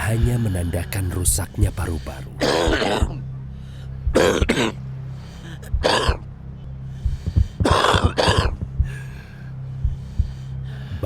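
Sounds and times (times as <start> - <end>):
harsh coughing: 2.4 - 3.2, 4.2 - 4.8, 5.8 - 6.2, 7.6 - 8.6.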